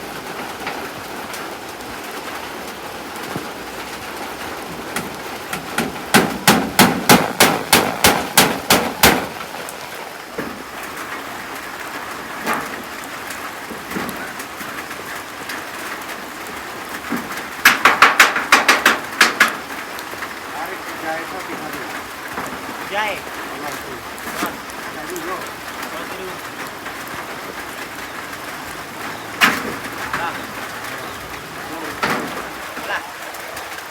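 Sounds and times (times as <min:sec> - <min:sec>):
steady rain: 0:00.0 - 0:33.9
hammer blows: 0:05.0 - 0:09.7.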